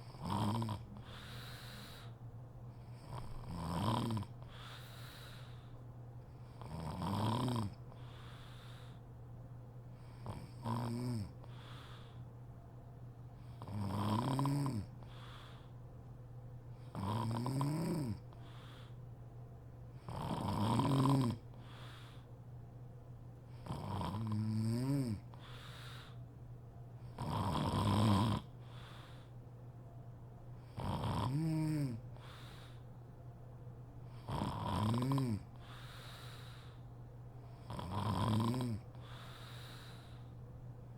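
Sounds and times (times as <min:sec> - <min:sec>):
woman snoring: 0:00.0 - 0:01.5, 0:03.0 - 0:04.4, 0:06.6 - 0:07.8, 0:10.2 - 0:11.4, 0:13.6 - 0:14.9, 0:16.9 - 0:18.2, 0:20.0 - 0:21.4, 0:23.6 - 0:25.2, 0:27.2 - 0:28.5, 0:30.7 - 0:32.3, 0:34.2 - 0:35.6, 0:37.6 - 0:39.7.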